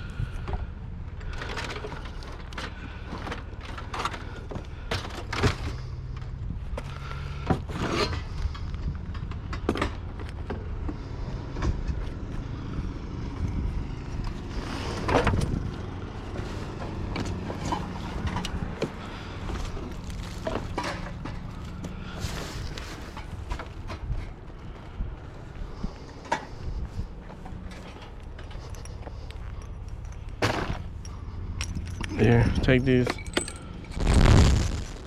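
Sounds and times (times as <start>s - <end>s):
knocks and clinks of items: 27.6s - 34.0s.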